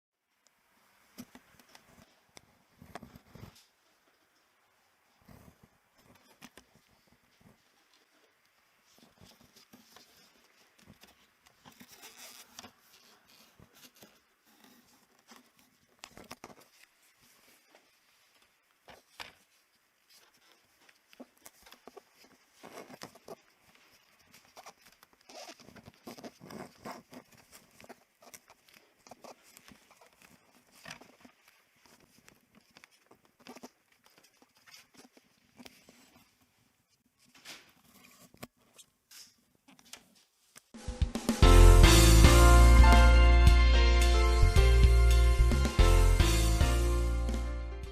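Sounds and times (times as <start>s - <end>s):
rats scratching and scurrying: 5.2s - 36.6s.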